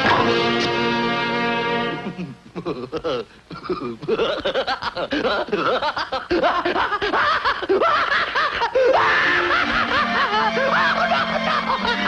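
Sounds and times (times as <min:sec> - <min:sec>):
orchestral score: 0:00.0 - 0:02.4
high-pitched cartoon laughter: 0:01.9 - 0:12.0.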